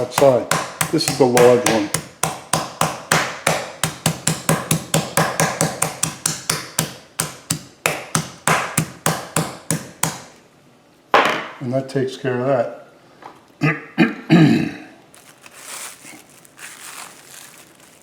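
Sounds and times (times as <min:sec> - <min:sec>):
meat pounder striking meat: 0:00.0 - 0:10.3.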